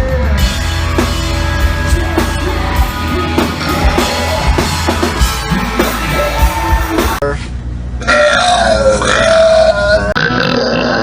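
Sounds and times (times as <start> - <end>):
rock band playing: 0.0 - 7.2.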